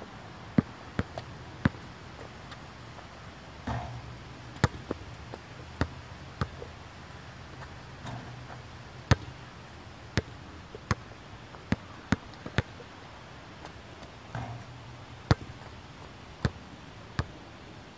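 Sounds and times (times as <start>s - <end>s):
basketball bouncing: 0.6s - 1.9s, 3.7s - 6.7s, 7.5s - 9.4s, 10.2s - 11.0s, 14.3s - 15.7s.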